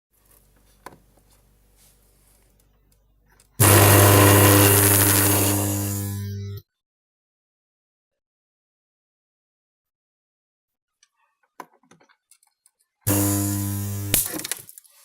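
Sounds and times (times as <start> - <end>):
transformer loud buzzing hum: 3.6 - 6.6, 13.1 - 14.4.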